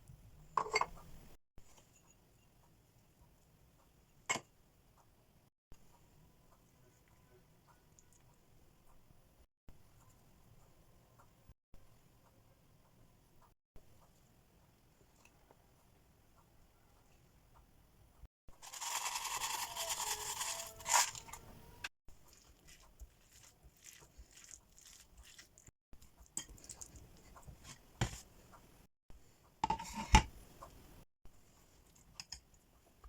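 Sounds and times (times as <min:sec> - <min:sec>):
scraping and tearing: 0:18.6 - 0:21.4.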